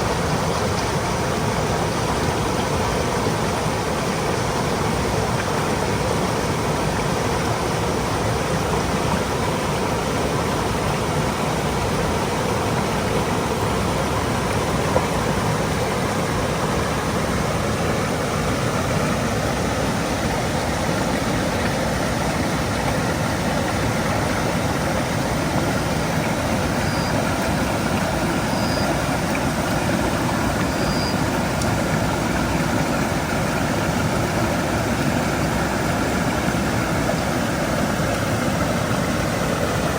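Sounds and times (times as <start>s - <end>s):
stream flowing over rocks: 0.0s - 39.9s
faint high chirps: 26.8s - 27.3s, 28.4s - 29.0s, 30.6s - 31.2s.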